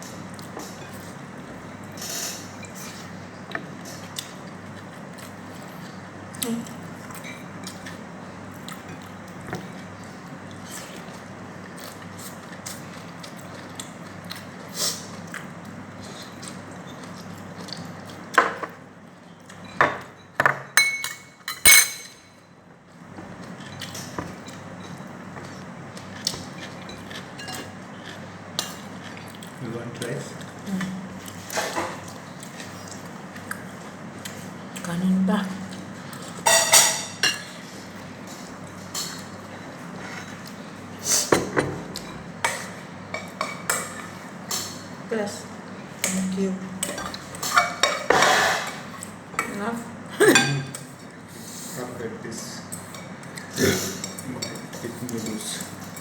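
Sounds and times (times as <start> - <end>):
cutlery clinking against dishes: 19.5 - 22.4, 36.4 - 37.6, 46.8 - 49.5, 50.3 - 50.9.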